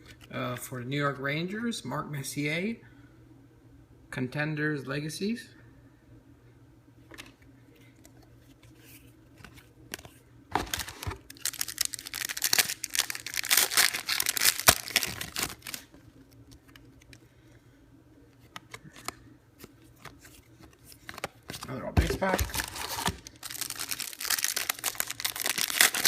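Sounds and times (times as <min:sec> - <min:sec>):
foil wrapper tearing and crinkling: 0:10.6 - 0:15.9, 0:21.7 - 0:26.0.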